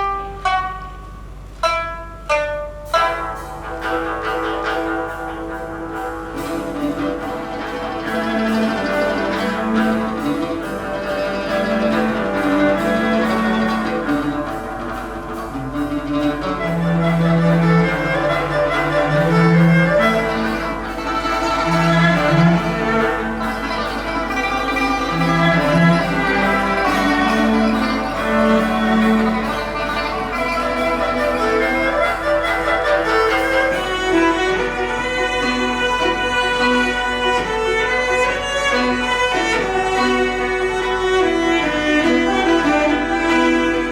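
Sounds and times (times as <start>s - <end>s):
bowed string lines: 0.0s - 43.9s
chamber ensemble playing: 0.0s - 43.9s.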